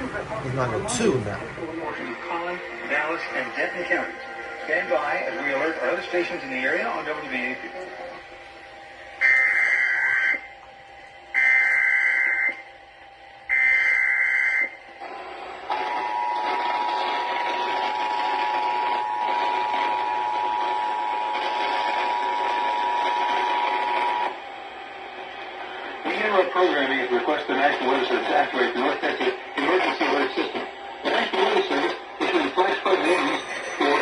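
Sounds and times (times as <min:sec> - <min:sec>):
radio hiss: 0:26.1 - 0:34.0.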